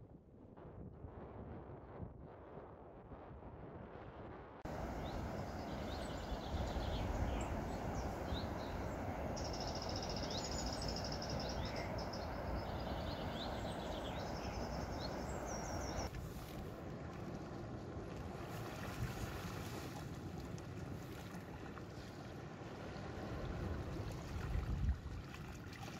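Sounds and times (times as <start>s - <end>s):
wind: 0.0s - 25.9s
small birds chirping: 4.7s - 16.1s
high buzzy bird trill: 4.9s - 16.1s.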